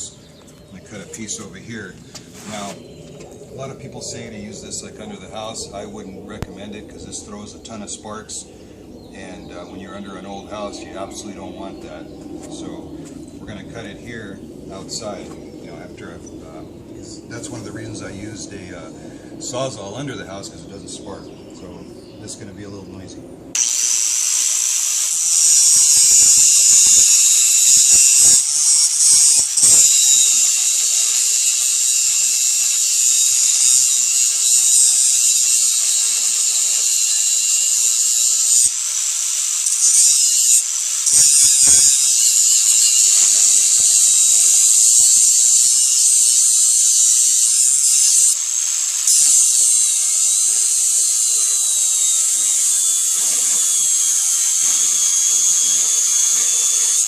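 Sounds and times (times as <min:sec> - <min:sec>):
angle grinder cutting iron pipe: 0:23.6 - 0:57.0.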